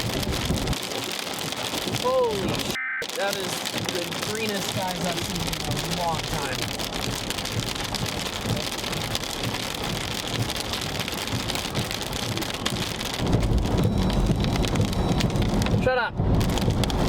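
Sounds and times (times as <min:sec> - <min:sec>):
heavy rain on a car: 0:00.0 - 0:17.0
low rumble: 0:05.0 - 0:17.0.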